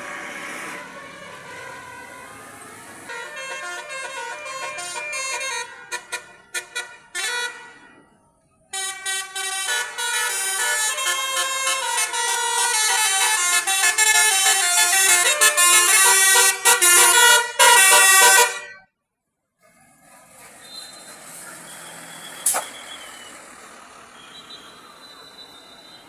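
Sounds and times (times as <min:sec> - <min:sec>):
multi-tone bus horn playing tune: 0:03.1 - 0:08.0, 0:08.7 - 0:18.9.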